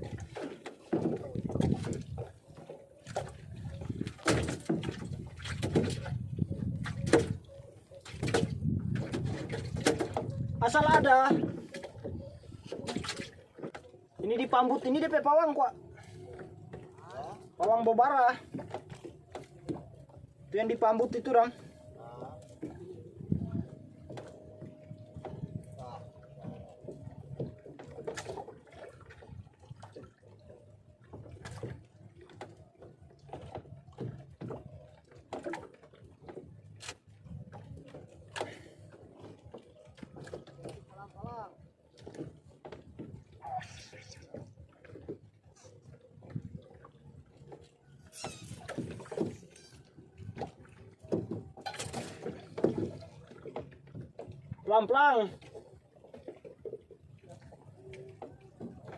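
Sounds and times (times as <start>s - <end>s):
sea water lapping and splashing: 0.0s - 58.9s.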